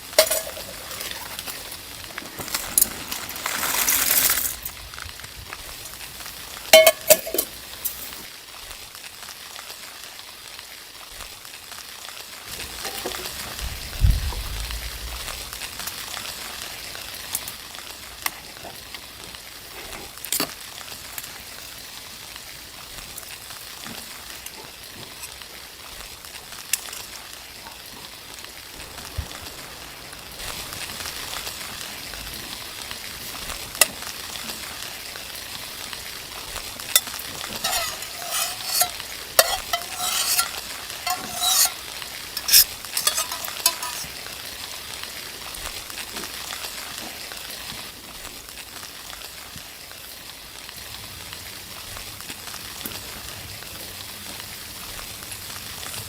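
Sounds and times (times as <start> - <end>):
utensil scraping a pan: 0.0 - 4.7, 6.8 - 8.3, 36.9 - 44.2
food sizzling in a pan: 0.0 - 56.0.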